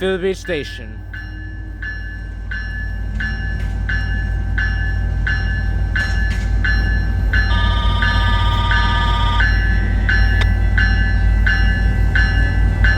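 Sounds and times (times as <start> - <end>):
diesel locomotive rumbling: 0.0 - 12.9
train bell ringing: 0.1 - 12.9
train air horn: 7.5 - 9.5.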